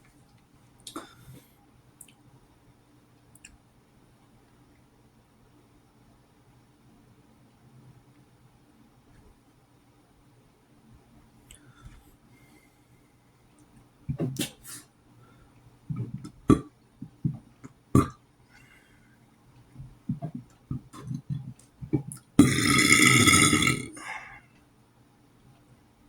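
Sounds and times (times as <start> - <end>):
person burping: 16.4 - 16.7, 18.0 - 18.2, 22.4 - 24.3.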